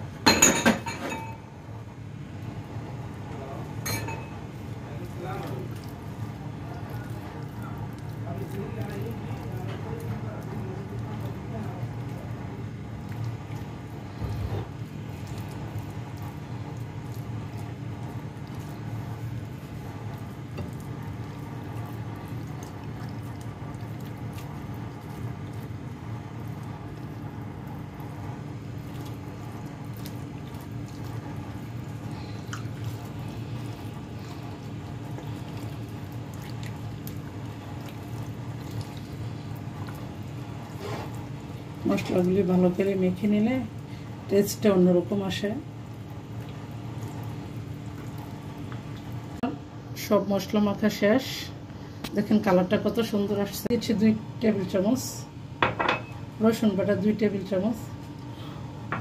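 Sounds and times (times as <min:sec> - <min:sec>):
steady low hum: 0:00.0 - 0:59.0
hands squishing wet marinade: 0:04.6 - 0:49.4.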